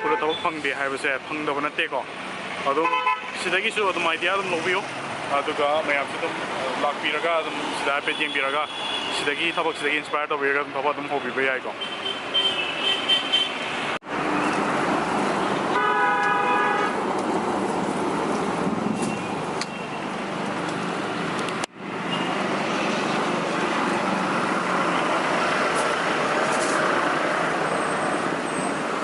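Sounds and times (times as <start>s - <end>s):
roadside traffic noise: 0.0s - 29.0s
vehicle horn: 2.8s - 3.4s, 15.7s - 17.0s.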